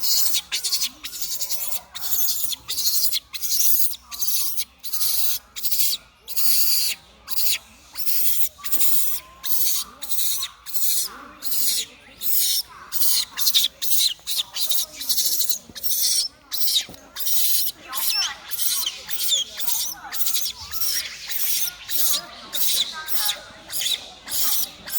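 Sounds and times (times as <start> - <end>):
baby monkey crying: 0.0 - 24.9.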